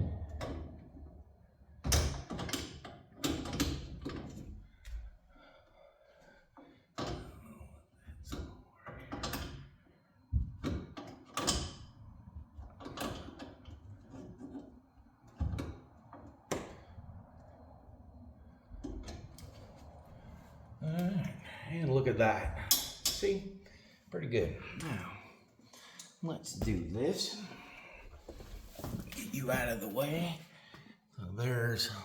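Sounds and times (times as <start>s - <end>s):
tools knocking and rattling on metal: 1.8s - 4.5s.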